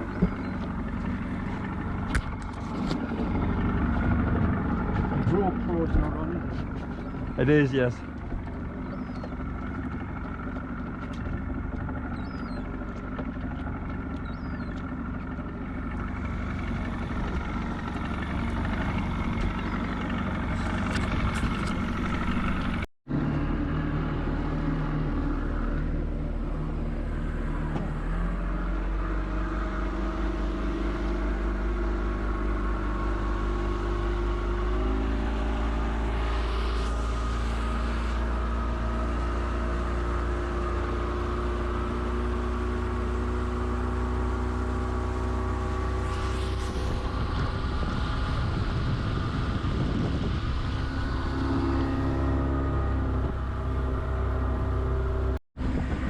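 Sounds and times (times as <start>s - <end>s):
boat engine droning: 0.0s - 56.0s.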